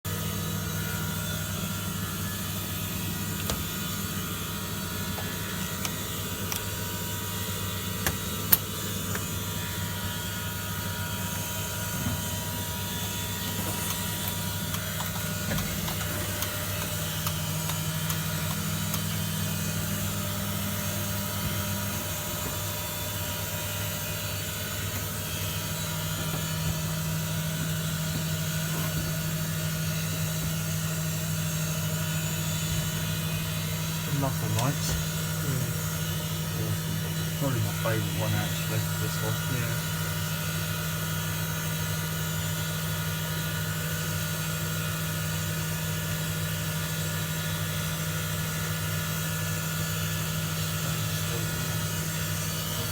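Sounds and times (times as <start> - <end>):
washing machine humming: 0.0 - 52.9.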